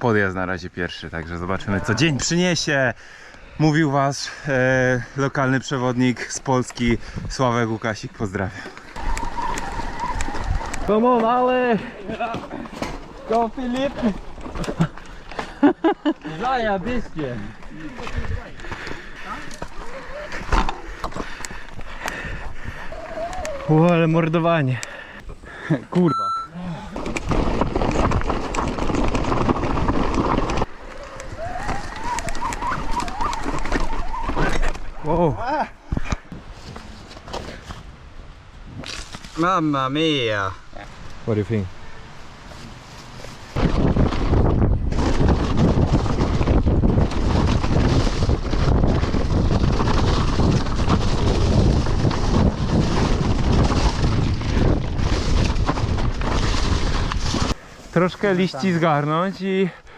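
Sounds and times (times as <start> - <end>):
mountain bike rattling on trail: 5.4 - 24.8, 26.9 - 35.2, 42.8 - 59.6
wind buffeting microphone: 9.0 - 11.9, 16.5 - 24.3, 43.4 - 58.3
mountain bike rumble and knocks: 26.9 - 34.9, 43.5 - 57.6.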